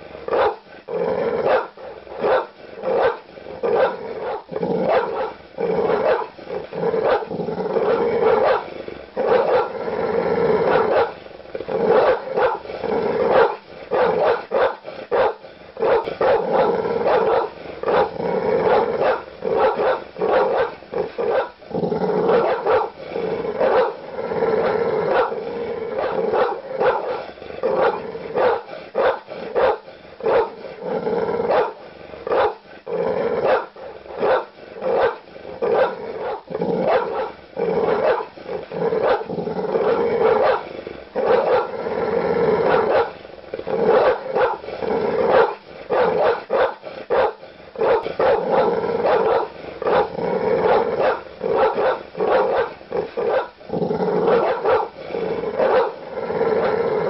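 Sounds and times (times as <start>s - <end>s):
dogs growling: 0.0s - 57.0s
large dogs barking aggressively: 0.0s - 57.0s.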